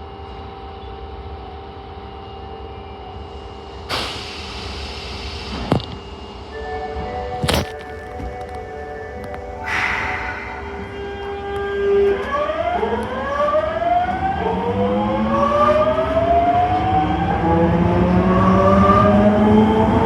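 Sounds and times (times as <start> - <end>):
subway train motors whining: 0.0 - 20.0.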